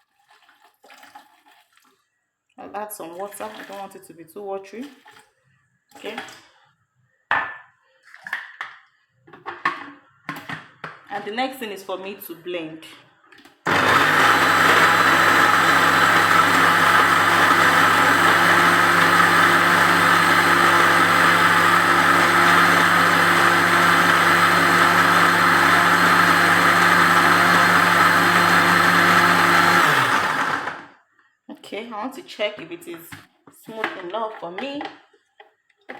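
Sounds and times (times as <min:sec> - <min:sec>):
electric blender running: 0:13.7 - 0:31.0.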